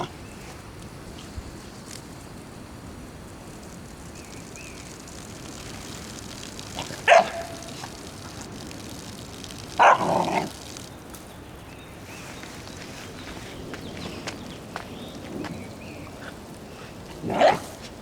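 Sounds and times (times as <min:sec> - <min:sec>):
puppy barking: 0:07.0 - 0:07.8, 0:09.8 - 0:10.2, 0:17.3 - 0:17.8.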